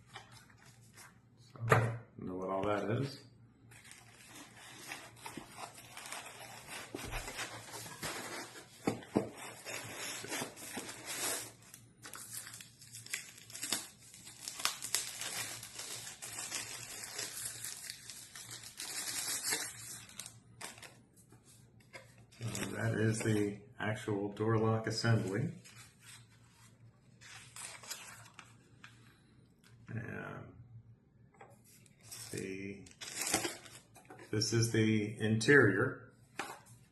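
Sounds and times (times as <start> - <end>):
plastic packaging crinkling and tearing: 3.7 - 21.0, 22.4 - 23.4, 27.2 - 28.6, 32.0 - 34.0.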